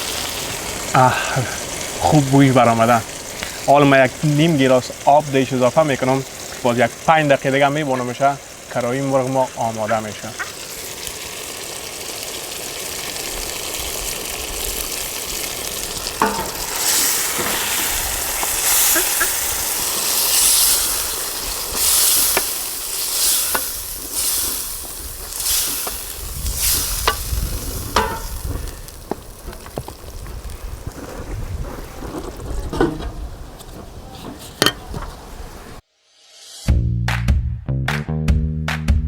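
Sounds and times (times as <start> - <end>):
chicken sizzling in a pan: 0.0 - 36.4
utensil clicking on a pan: 15.7 - 29.9
utensil scraping a pan: 15.7 - 30.1, 30.9 - 35.8.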